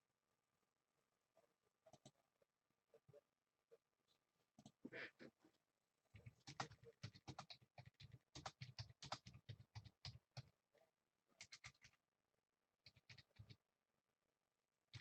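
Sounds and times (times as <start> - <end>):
typing on a computer keyboard: 6.2 - 10.5, 11.4 - 12.0, 12.8 - 13.6.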